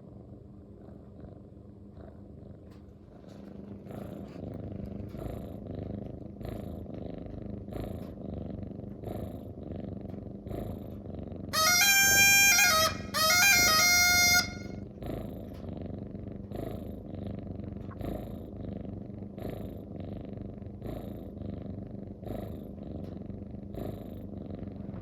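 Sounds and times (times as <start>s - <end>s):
cat purring: 0.0s - 11.6s, 14.8s - 25.0s
musical jingle: 11.6s - 14.7s.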